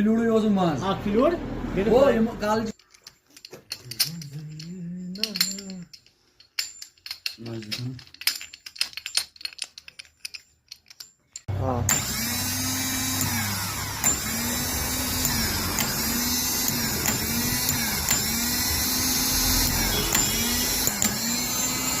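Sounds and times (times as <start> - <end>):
starter motor whirring and grinding: 11.9 - 22.0.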